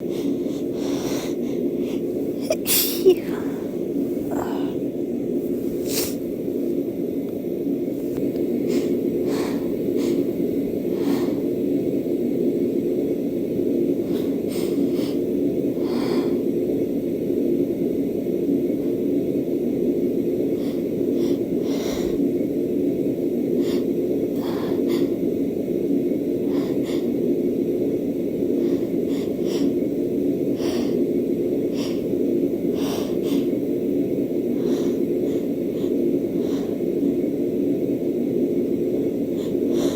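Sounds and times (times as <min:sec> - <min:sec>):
low background hum: 0:00.0 - 0:39.9
woman sniffing and hitching: 0:05.7 - 0:06.3.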